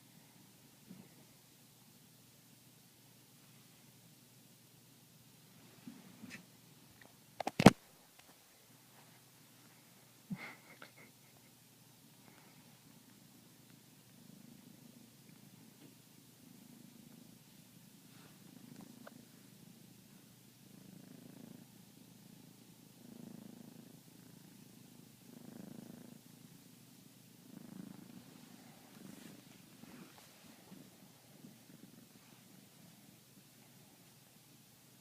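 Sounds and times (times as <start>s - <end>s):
kitten purring: 10.2s - 35.0s.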